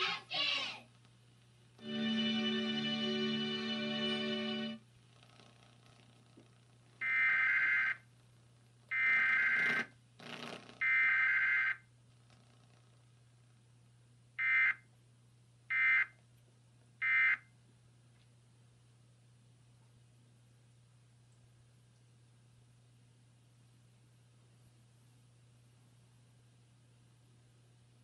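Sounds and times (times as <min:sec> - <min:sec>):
faint crackle: 0:12.1 - 0:13.1.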